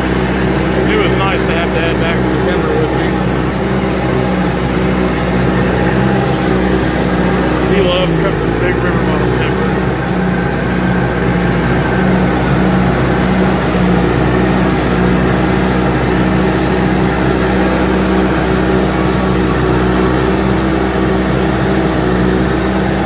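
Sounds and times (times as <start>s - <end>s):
diesel engine running under load: 0.0s - 23.0s.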